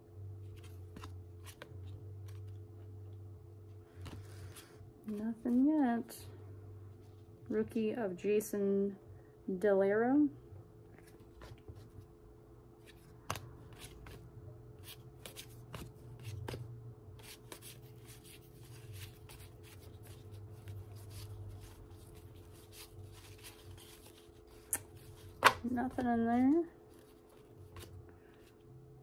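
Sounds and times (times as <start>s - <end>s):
faint steady hum: 0.0s - 29.0s
cards being flipped through: 0.4s - 2.9s, 3.9s - 5.7s, 10.9s - 12.1s, 12.8s - 28.6s.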